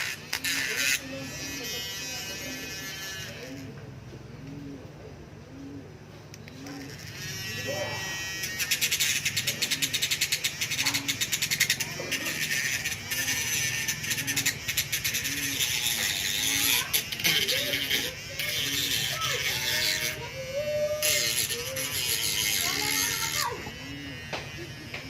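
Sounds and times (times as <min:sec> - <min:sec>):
voices: 0:00.0 - 0:25.0
power sander whining: 0:06.9 - 0:25.0.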